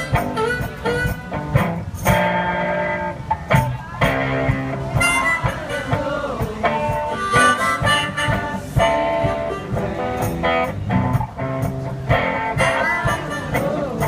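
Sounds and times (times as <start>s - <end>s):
blues harmonica: 0.0s - 2.1s, 4.9s - 10.5s, 12.6s - 14.0s
guitar: 0.0s - 14.0s.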